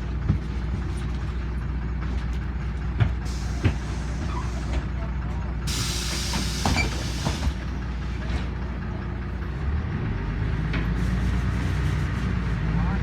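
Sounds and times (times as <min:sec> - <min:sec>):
bus engine running: 0:00.0 - 0:13.0
hiss of released air: 0:03.3 - 0:04.7, 0:05.7 - 0:07.5.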